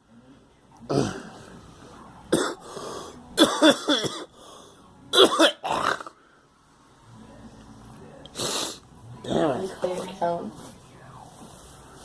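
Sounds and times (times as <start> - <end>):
person coughing: 2.3 - 2.6, 3.4 - 4.3, 5.2 - 6.1.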